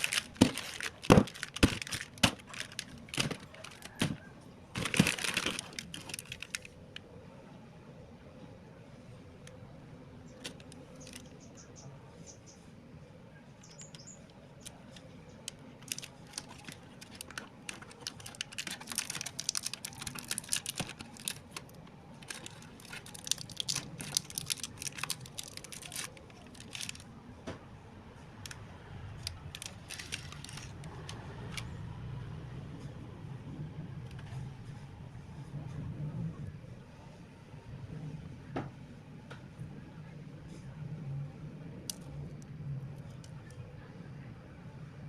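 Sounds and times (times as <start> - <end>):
plastic packaging crinkling: 0.0 - 6.9, 13.9 - 27.1, 29.2 - 31.7.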